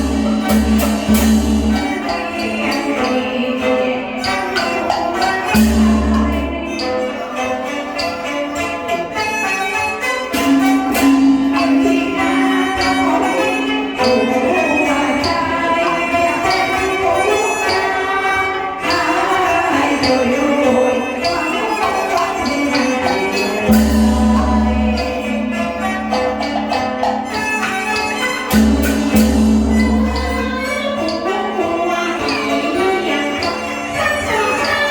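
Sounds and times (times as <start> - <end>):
sharp percussion strokes: 0.0 - 34.9
string instruments melody: 0.0 - 34.9.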